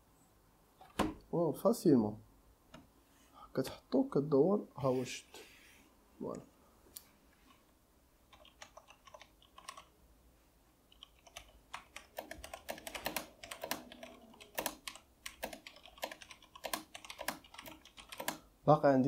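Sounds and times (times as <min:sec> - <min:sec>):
mechanical keyboard typing: 0:08.3 - 0:09.9, 0:10.9 - 0:18.4.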